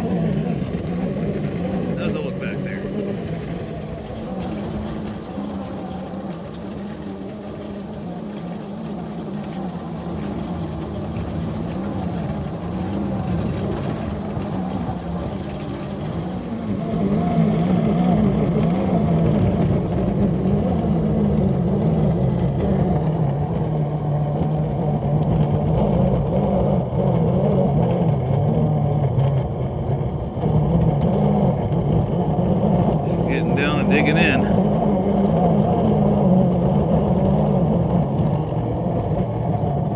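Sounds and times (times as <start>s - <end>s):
model locomotive motors droning: 0.0s - 39.9s.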